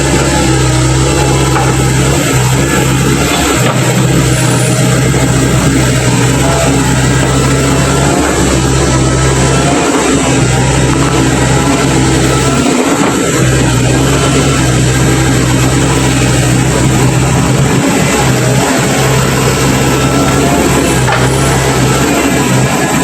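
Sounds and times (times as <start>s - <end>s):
excavator diesel engine running: 0.0s - 23.0s.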